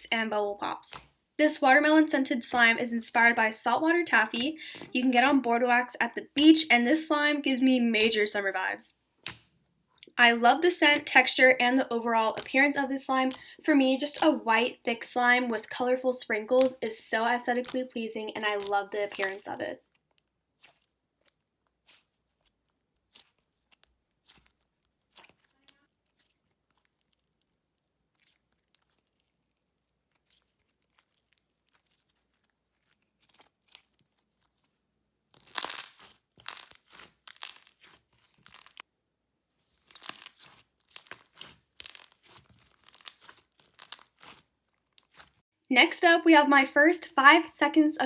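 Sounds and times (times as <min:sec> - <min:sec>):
slime squishing with crackly pops: 0:18.6 - 0:38.9, 0:39.8 - 0:45.4.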